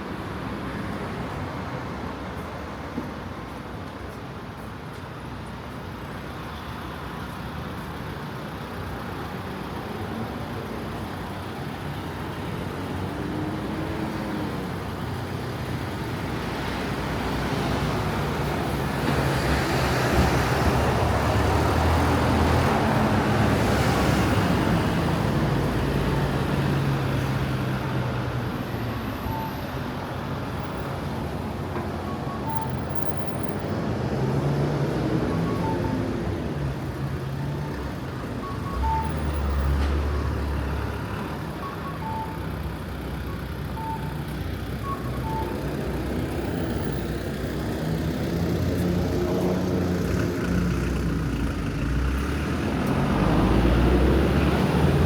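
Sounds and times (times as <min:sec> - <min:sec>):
street traffic noise: 0:00.0 - 0:55.0
vehicle engine passing close: 0:47.8 - 0:55.0.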